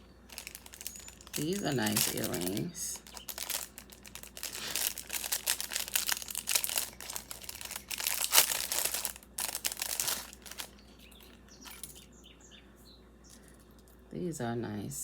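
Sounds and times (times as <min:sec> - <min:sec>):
packaging crinkling: 0:00.2 - 0:12.1.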